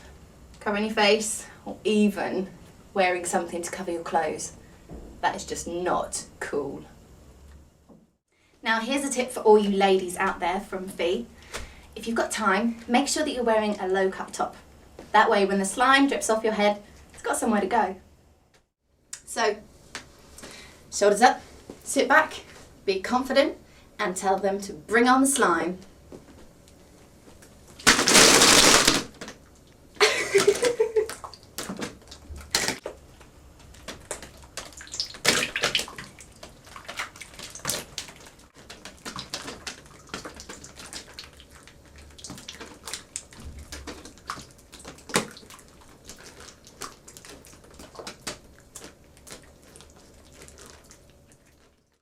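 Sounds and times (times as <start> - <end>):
wet gush of slime: 27.8 - 29.1
slime splats and drips: 33.8 - 51.6.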